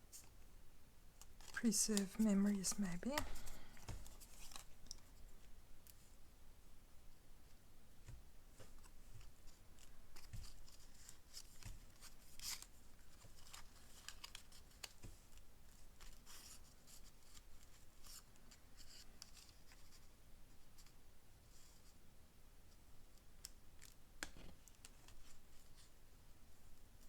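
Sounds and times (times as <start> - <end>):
paper rustling and clicking: 8.6 - 15.4.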